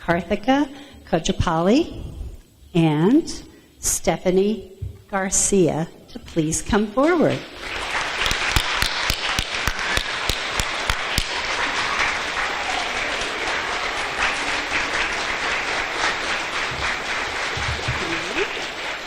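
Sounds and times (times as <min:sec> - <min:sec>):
close hand claps: 0:07.3 - 0:19.0
audience applauding: 0:07.4 - 0:19.0.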